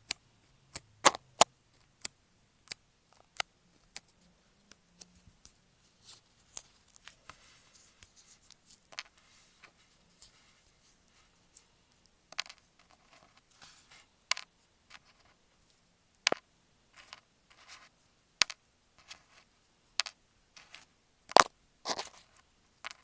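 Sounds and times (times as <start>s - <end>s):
scrapes: 12.9s - 14.1s.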